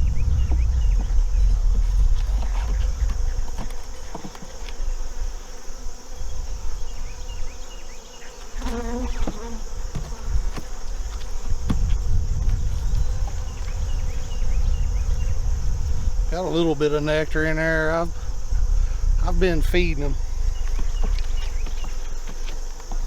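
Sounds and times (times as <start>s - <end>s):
low rumble: 0.0s - 3.3s
bee flying close past: 0.0s - 17.4s
honey bees buzzing: 0.0s - 23.0s.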